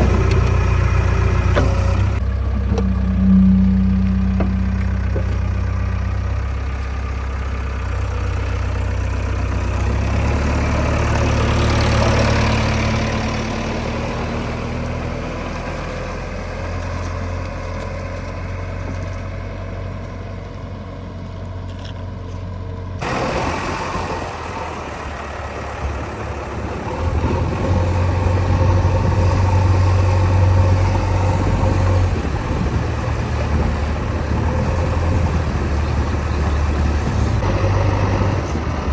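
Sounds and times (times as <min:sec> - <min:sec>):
heavy machinery diesel engines: 0:00.0 - 0:38.9.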